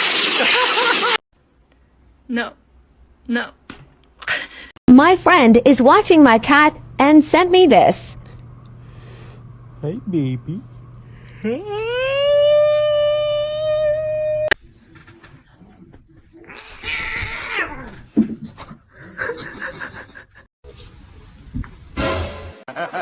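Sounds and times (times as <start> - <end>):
cat meowing: 16.5 - 17.9.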